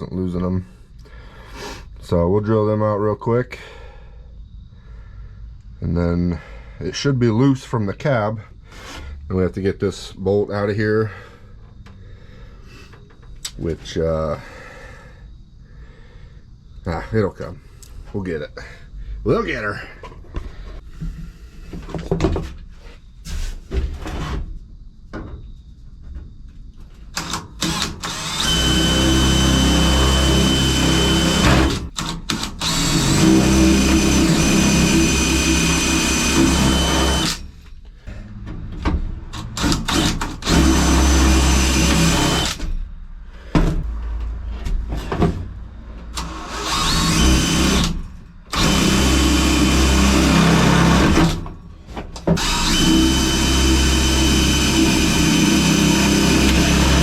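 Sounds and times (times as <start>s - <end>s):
power drill drilling into metal: 27.2s - 37.5s, 39.4s - 42.6s, 46.2s - 51.4s, 52.4s - 57.0s
handling knocks and clanks: 38.1s - 39.6s, 43.4s - 46.1s.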